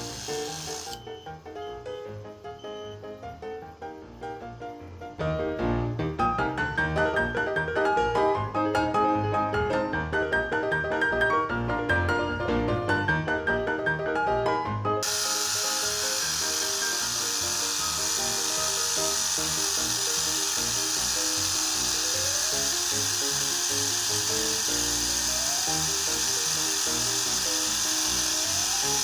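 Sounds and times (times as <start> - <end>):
small electric motor tool hissing: 0.0 - 1.0, 15.0 - 29.0
background music: 0.0 - 29.0.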